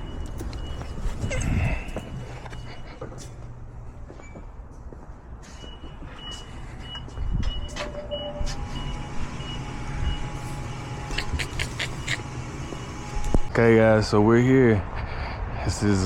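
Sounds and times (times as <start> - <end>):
vehicle engine rumbling: 0.0 - 16.0
high electronic beeping: 5.7 - 13.5.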